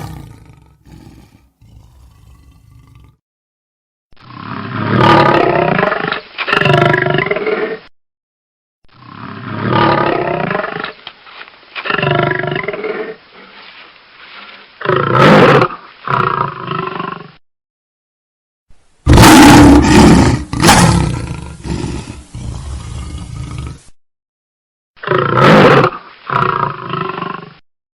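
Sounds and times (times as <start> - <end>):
lions roaring: 0.0 - 3.2, 19.1 - 23.8.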